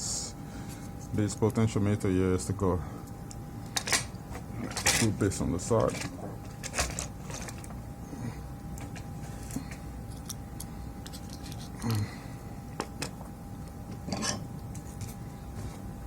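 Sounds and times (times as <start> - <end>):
faint steady hum: 0.0 - 16.0
clicks and knocks of parts handled: 3.0 - 7.8, 8.8 - 12.0.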